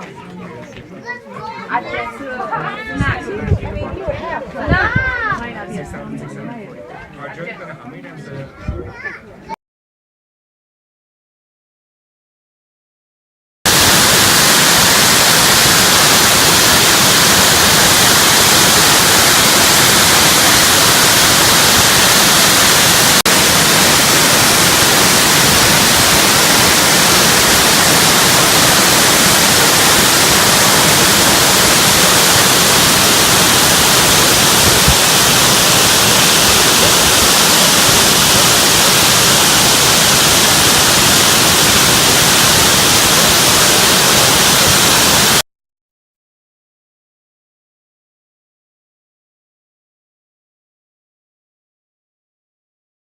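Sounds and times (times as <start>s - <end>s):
waterfall rushing: 13.7s - 45.4s.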